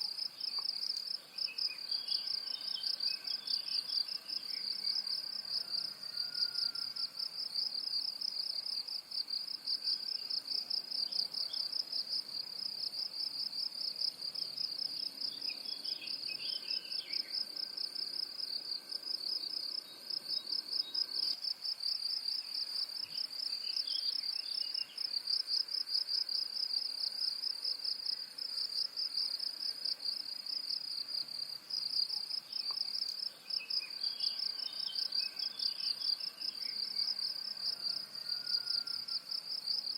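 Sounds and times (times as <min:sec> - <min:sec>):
high-pitched insect trill: 0:14.0 - 0:39.9.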